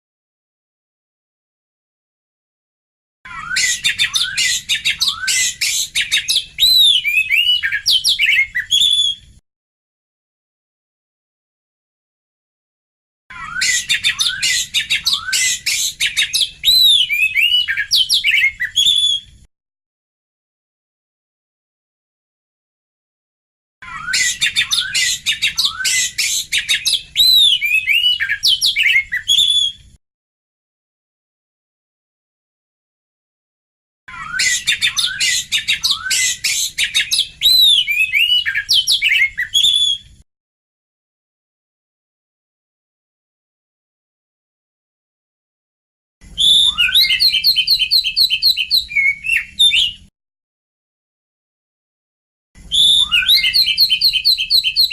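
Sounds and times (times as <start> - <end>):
bird clear whistles: 3.3 - 9.3, 13.4 - 19.3, 23.8 - 29.8, 34.1 - 40.1, 46.4 - 50.1, 52.6 - 54.9.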